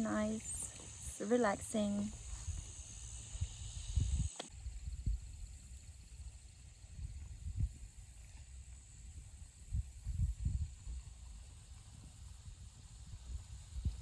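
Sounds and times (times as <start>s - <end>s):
wind buffeting microphone: 0.0s - 5.6s, 6.8s - 8.5s, 9.1s - 14.0s
steady high hiss: 0.0s - 6.6s.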